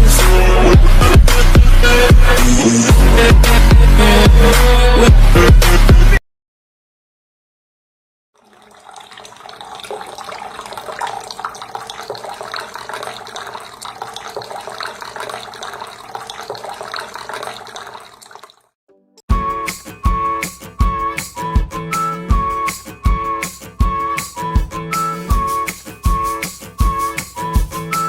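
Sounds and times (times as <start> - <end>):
fountain water splashing: 8.4 - 18.6.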